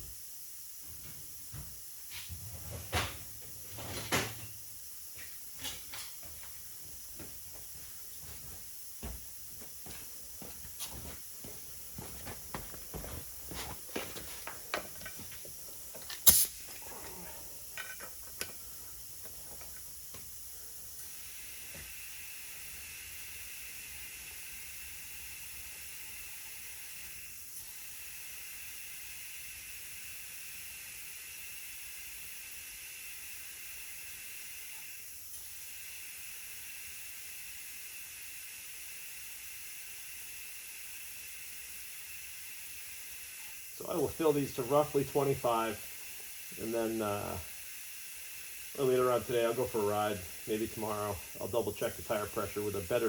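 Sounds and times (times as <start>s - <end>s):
compressed air hissing into tire: 2.0s - 2.4s, 14.3s - 30.4s
sharp snap: 16.2s - 16.7s.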